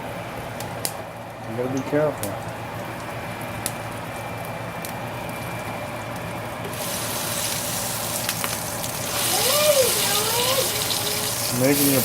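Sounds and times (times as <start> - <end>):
pancakes sizzling in a frying pan: 6.7 - 12.0.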